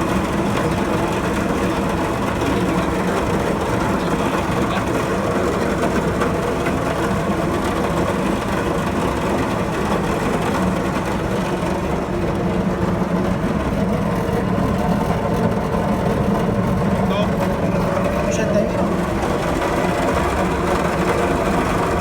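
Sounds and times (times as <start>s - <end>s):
pump humming: 15.7s - 22.0s.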